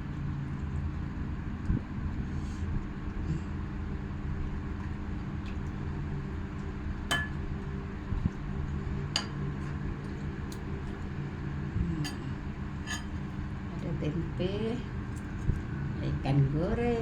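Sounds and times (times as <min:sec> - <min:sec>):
steady low hum: 0:00.0 - 0:17.0
dishes and cutlery clinking: 0:12.8 - 0:13.2.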